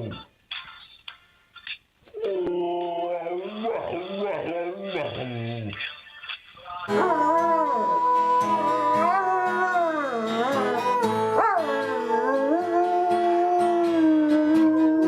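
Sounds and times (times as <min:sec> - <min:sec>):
music: 0:02.8 - 0:15.0
dog howling: 0:06.9 - 0:15.0.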